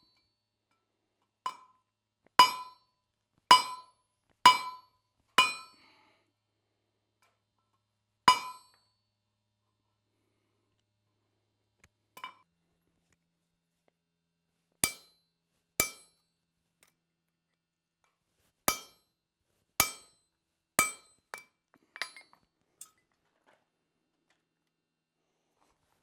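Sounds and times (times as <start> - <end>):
hammer striking on anvil: 2.4 - 2.7, 3.5 - 3.9, 4.5 - 4.8, 5.4 - 5.8, 8.3 - 8.8, 14.8 - 15.1, 15.8 - 16.1, 18.7 - 19.0, 19.8 - 20.1, 20.8 - 21.1.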